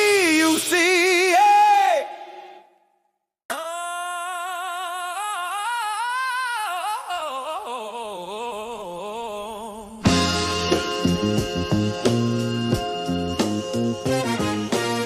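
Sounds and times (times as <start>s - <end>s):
wordless singing with vibrato: 0.0s - 12.2s
hip-hop beat with drums and bass: 10.0s - 15.0s.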